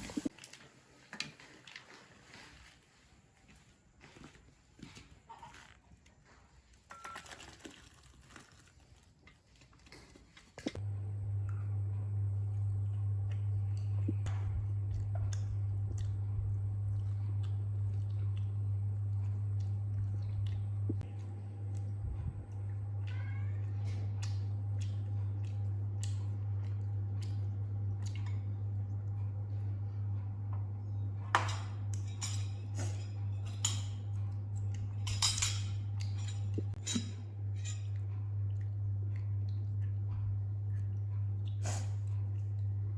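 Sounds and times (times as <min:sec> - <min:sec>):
steady low hum: 0:10.6 - 0:42.9.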